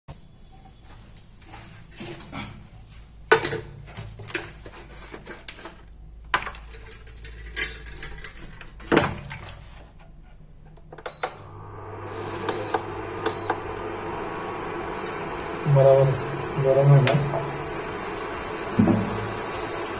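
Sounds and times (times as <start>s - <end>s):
cooker hum and fan noise: 3.3s - 19.9s
short high beeps: 12.4s - 13.8s.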